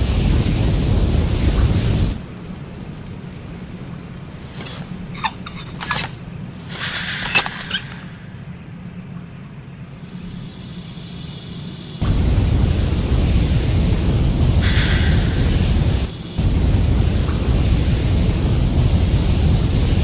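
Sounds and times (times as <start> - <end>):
flamethrower flame roar: 0.0 - 5.9, 12.0 - 20.0
steady low hum: 0.0 - 20.0
short hiss: 4.4 - 8.3, 14.4 - 17.6.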